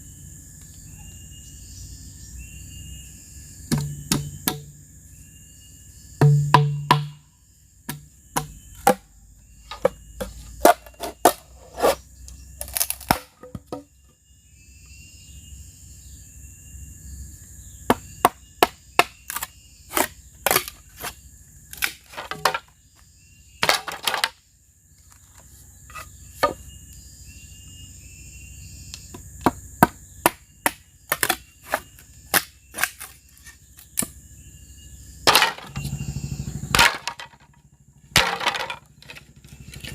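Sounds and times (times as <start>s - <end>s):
tool striking bamboo: 3.7s - 4.8s, 6.2s - 7.3s, 7.9s - 9.1s, 9.7s - 12.0s, 12.6s - 13.9s, 17.9s - 21.1s, 21.7s - 22.7s, 23.6s - 24.4s, 29.4s - 34.2s, 35.3s - 35.9s, 36.7s - 37.5s, 38.1s - 39.9s.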